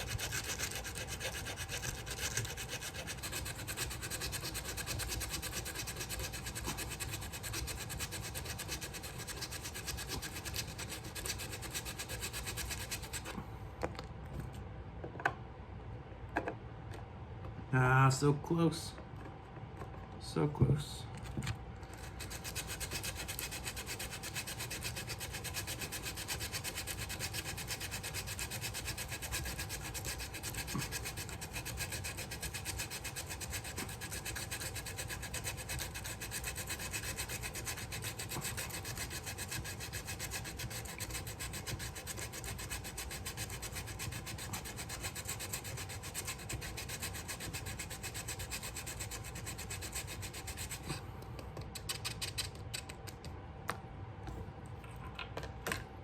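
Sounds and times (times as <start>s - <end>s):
sandpaper rubbing on wood: 0.0s - 13.3s, 22.0s - 51.0s.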